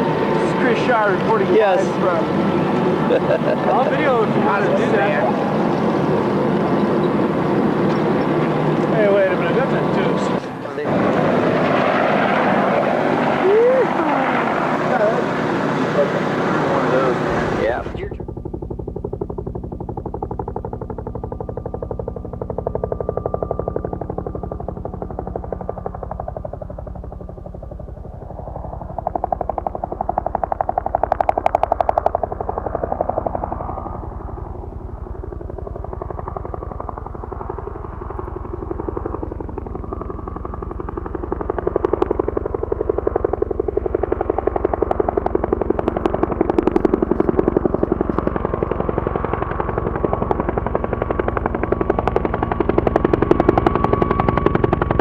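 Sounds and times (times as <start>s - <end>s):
helicopter rotor chopping: 0.0s - 55.0s
sharp cracks: 28.9s - 34.1s.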